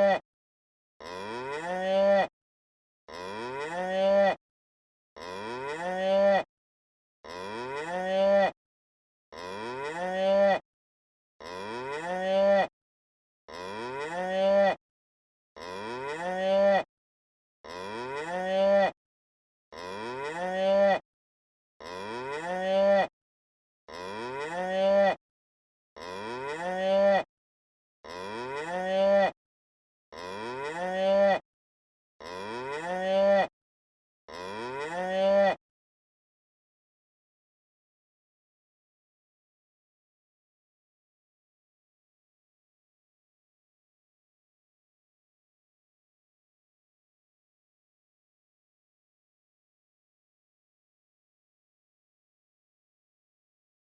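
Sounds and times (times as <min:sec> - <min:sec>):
cow mooing: 0:01.0 - 0:02.3, 0:03.1 - 0:04.4, 0:05.2 - 0:06.5, 0:07.3 - 0:08.5, 0:09.4 - 0:10.6, 0:11.4 - 0:12.7, 0:13.5 - 0:14.8, 0:15.6 - 0:16.8, 0:17.7 - 0:18.9, 0:19.8 - 0:21.0, 0:21.8 - 0:23.1, 0:23.9 - 0:25.2, 0:26.0 - 0:27.2, 0:28.1 - 0:29.4, 0:30.2 - 0:31.4, 0:32.2 - 0:33.5, 0:34.3 - 0:35.6.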